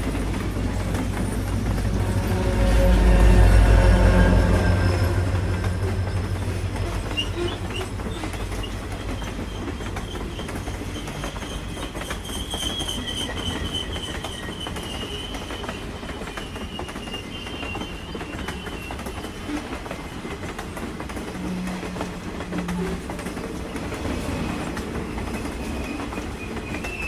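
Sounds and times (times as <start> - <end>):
railcars clickety-clack: 0.0 - 27.0
train rumbling past: 0.0 - 27.0
high wheel squeal: 1.6 - 20.6.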